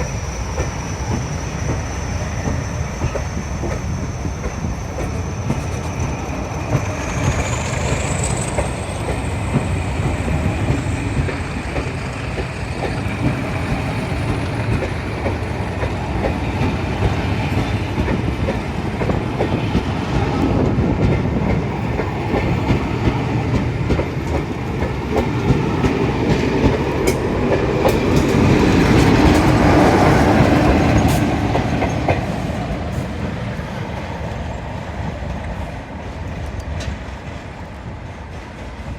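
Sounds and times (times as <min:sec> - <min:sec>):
train wheels clattering over rails: 0:00.0 - 0:38.9.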